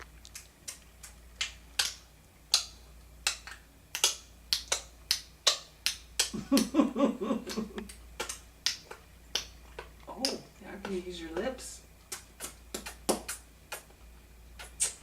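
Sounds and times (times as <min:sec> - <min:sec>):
tongue clicks: 0:00.2 - 0:06.7, 0:07.5 - 0:10.5, 0:12.0 - 0:14.0, 0:14.6 - 0:15.0.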